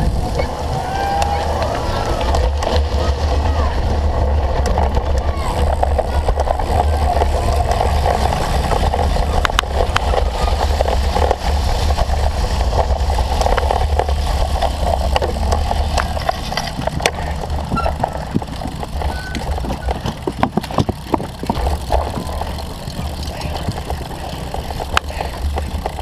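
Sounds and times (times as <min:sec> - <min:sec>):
bike clicks and knocks: 0:00.0 - 0:26.0
bike riding over rough ground: 0:00.0 - 0:26.0
wind rumble on microphone: 0:00.0 - 0:26.0.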